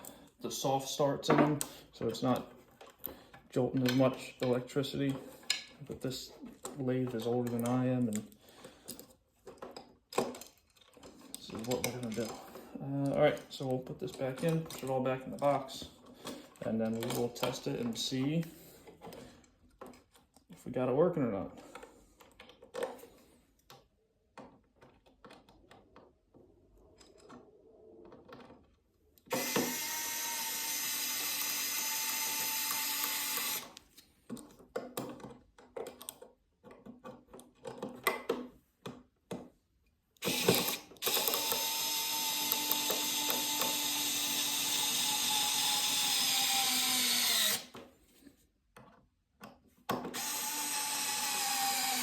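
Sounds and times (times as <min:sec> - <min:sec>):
clicks and handling knocks: 0:01.2 - 0:20.6, 0:21.5 - 0:29.4, 0:33.8 - 0:41.7, 0:47.7 - 0:50.3
power drill running: 0:29.3 - 0:33.7, 0:40.2 - 0:47.7, 0:50.1 - 0:52.0.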